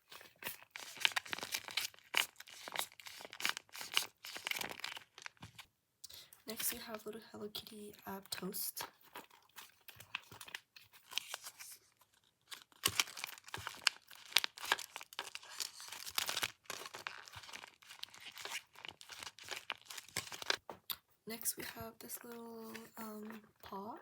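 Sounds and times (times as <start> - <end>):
plastic packaging crackling: 0.0 - 5.6, 8.9 - 20.6.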